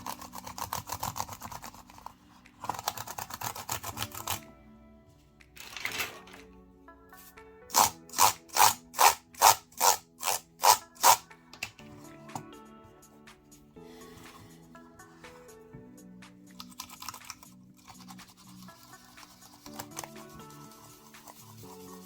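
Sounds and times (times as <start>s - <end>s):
keyboard keys clicking and rattling: 0.0s - 4.4s, 5.5s - 6.5s, 16.5s - 18.7s
background music: 0.0s - 22.0s.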